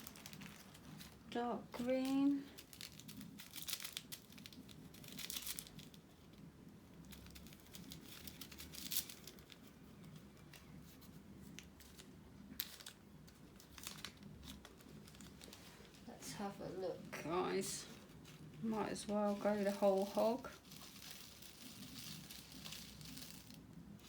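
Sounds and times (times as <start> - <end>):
plastic packets crinkling and tearing: 0.0 - 24.0.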